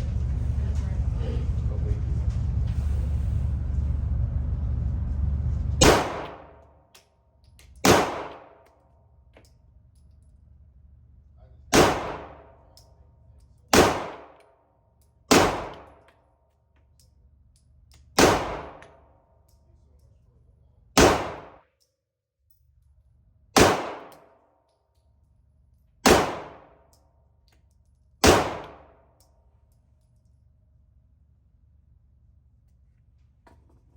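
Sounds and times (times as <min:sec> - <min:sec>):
pistol shots with echo: 0:05.8 - 0:06.6, 0:07.8 - 0:08.6, 0:11.7 - 0:12.7, 0:13.7 - 0:14.4, 0:15.3 - 0:16.0, 0:18.2 - 0:19.0, 0:21.0 - 0:21.6, 0:23.6 - 0:24.3, 0:26.0 - 0:26.8, 0:28.2 - 0:29.1.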